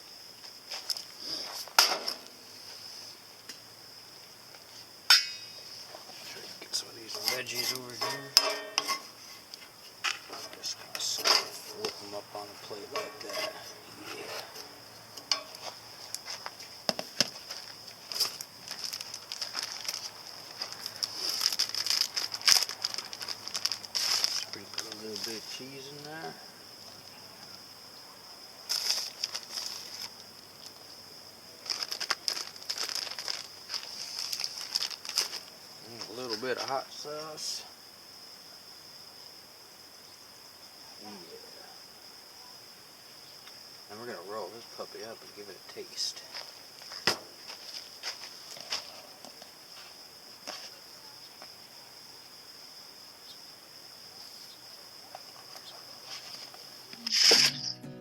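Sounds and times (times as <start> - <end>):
insects trilling: 0.0 - 58.0
plastic packaging crinkling: 17.4 - 25.3, 28.7 - 30.2, 31.6 - 35.5.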